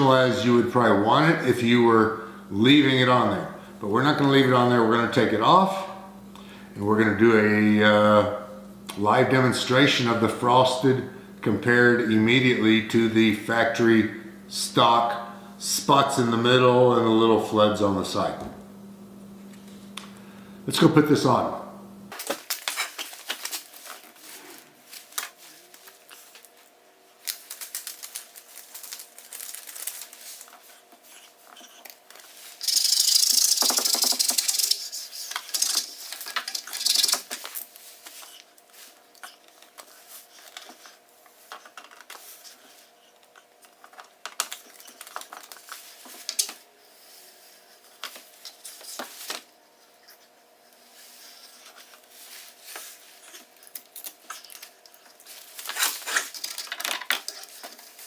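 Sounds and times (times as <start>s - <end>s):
faint steady hum: 0.0s - 58.0s
paper clicks taps and crinkles: 24.9s - 31.0s, 33.3s - 40.9s, 43.2s - 46.6s, 52.8s - 58.0s
rasping hiss: 32.5s - 36.1s.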